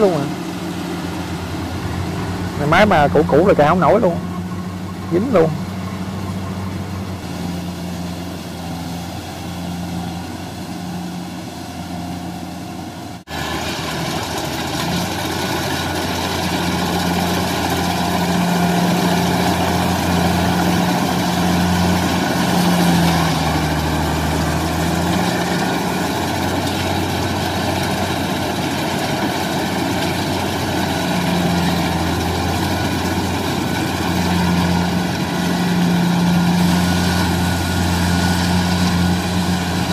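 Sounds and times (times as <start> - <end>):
diesel engine running under load: 0.0 - 39.9.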